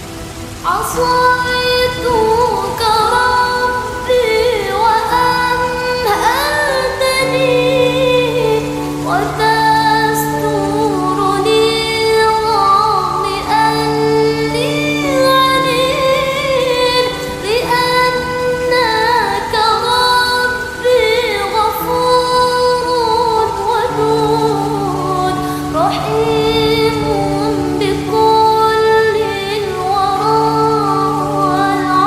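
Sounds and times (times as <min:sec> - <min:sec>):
woman singing: 0:00.0 - 0:32.0.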